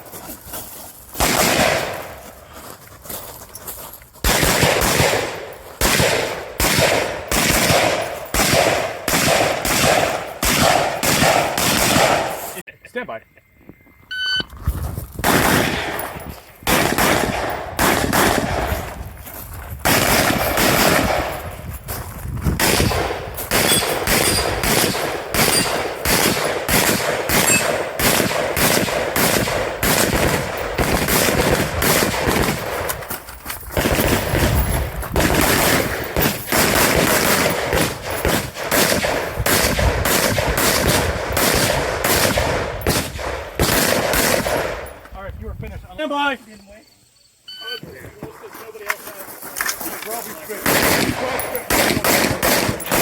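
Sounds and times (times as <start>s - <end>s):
rifle shots fired rapidly: 1.2s - 2.1s, 4.2s - 12.6s, 15.2s - 19.0s, 19.8s - 21.5s, 22.6s - 33.0s, 33.8s - 45.0s, 50.6s - 53.0s.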